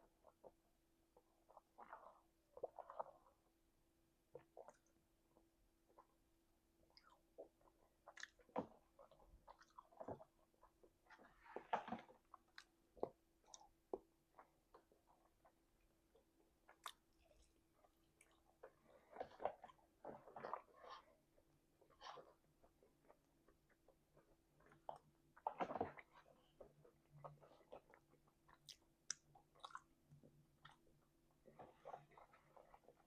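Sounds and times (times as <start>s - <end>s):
wet open-mouthed chewing: 6.9s - 21.2s, 21.8s - 33.0s.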